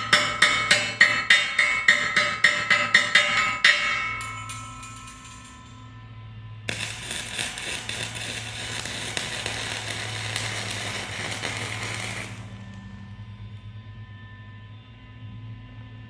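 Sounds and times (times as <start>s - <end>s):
arc welding crackle: 6.7s - 13.6s.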